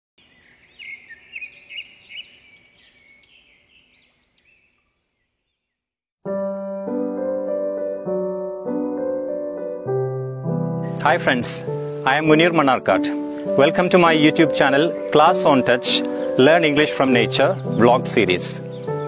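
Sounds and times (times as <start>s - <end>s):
birds chirping: 0.2s - 19.0s
piano chords: 6.2s - 19.0s.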